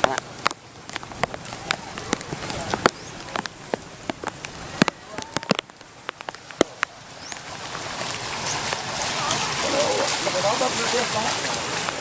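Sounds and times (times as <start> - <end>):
raindrops tapping on a surface: 0.0 - 9.5
flowing floodwater: 0.0 - 12.0
heavy rain hiss: 0.0 - 12.0.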